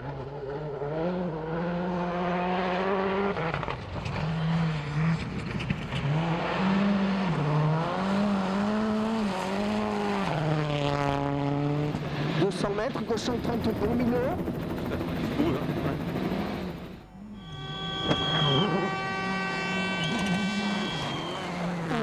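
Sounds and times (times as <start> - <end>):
rally car engine revving: 0.0 - 12.4, 17.4 - 22.0.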